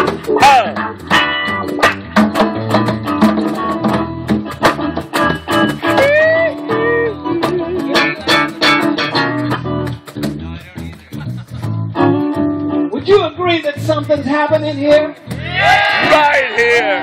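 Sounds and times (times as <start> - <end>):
strummed acoustic guitar: 0.0 - 12.9
low bass line: 0.0 - 16.1.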